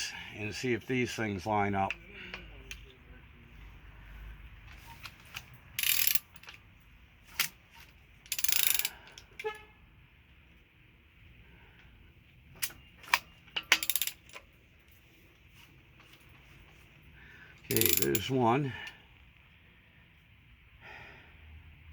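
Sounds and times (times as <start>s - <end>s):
socket ratchet clicking: 5.0s - 6.6s, 8.2s - 9.3s, 12.6s - 14.5s, 17.7s - 18.3s
ringing metal clink: 17.7s - 18.3s.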